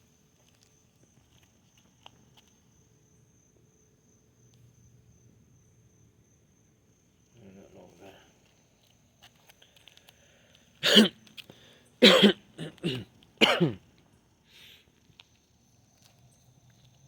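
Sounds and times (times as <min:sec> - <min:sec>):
person coughing: 0:10.8 - 0:11.2, 0:12.0 - 0:13.8
throat clearing: 0:10.8 - 0:11.2, 0:12.0 - 0:13.8.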